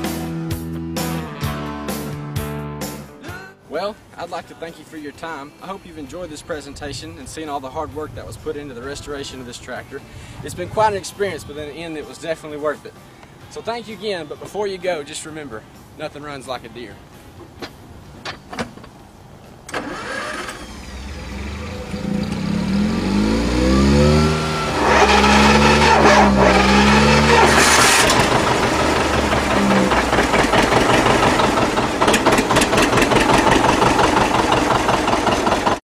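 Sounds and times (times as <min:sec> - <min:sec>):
diesel tractor engine starting: 0:19.6 - 0:35.8.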